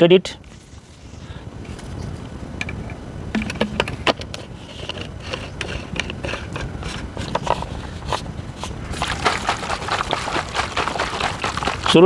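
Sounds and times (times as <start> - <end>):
plastic sprayer clicking and scraping: 3.4 - 12.0
salt rattling: 7.4 - 12.0.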